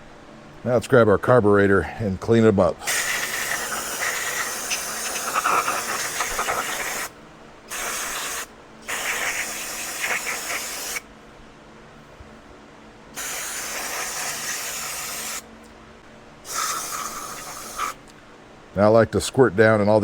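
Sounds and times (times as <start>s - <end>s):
aerosol spray hissing: 2.8s - 11.0s, 13.2s - 15.5s, 16.5s - 18.1s.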